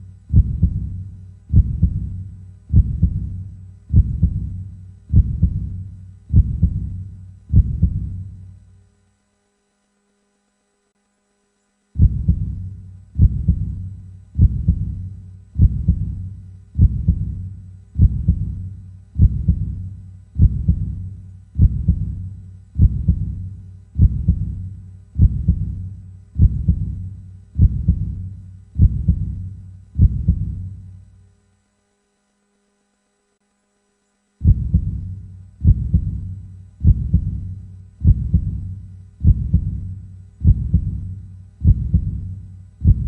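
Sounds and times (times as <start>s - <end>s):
slow heartbeat: 0.0s - 8.4s, 12.0s - 30.9s, 34.4s - 43.0s.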